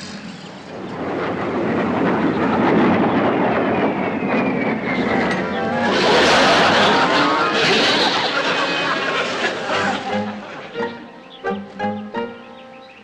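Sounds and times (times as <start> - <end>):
airplane flying overhead: 0.0 - 13.0.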